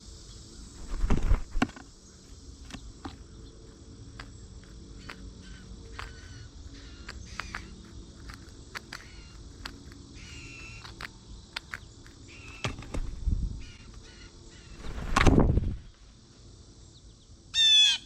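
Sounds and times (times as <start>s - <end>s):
bird chirps: 5.0s - 12.8s.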